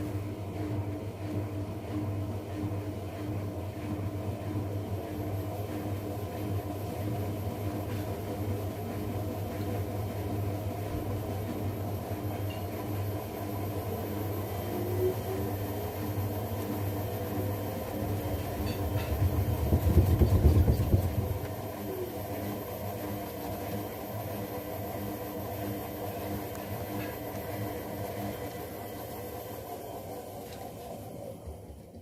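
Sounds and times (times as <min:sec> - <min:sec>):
washing machine motor hum: 0:00.0 - 0:32.0.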